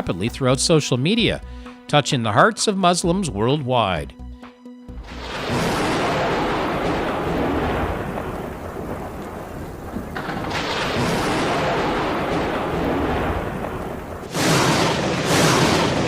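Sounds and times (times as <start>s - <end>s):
thunder rumbling: 5.0s - 16.0s
heavy rain: 5.1s - 16.0s.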